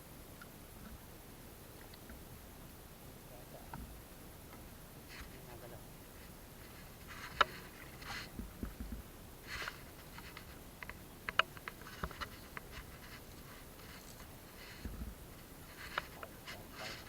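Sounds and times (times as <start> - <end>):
light clicks and taps: 7.2 - 9.0, 9.6 - 17.0
soft low thumps: 8.3 - 9.1, 14.8 - 15.3
short rustles: 11.7 - 17.0.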